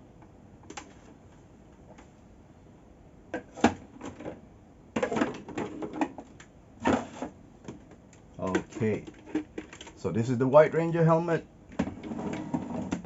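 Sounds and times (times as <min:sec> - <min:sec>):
plastic helmets clicking and knocking: 0:07.6 - 0:10.0.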